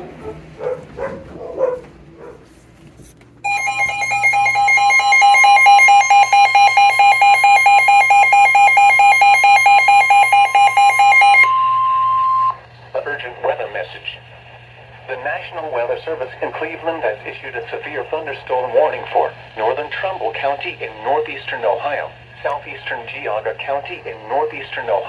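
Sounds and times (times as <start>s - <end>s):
rapid electronic beeping: 3.5s - 12.6s
steady alert tone: 3.5s - 12.6s.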